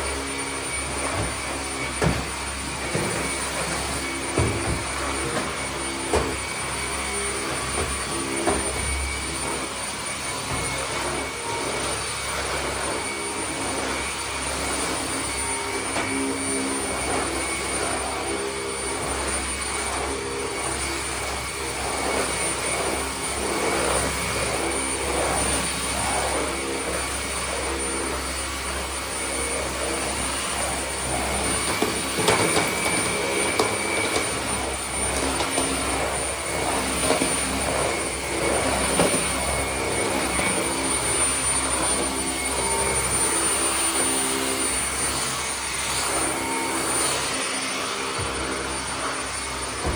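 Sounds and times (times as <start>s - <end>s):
motor whirring with high whine: 0.0s - 49.9s.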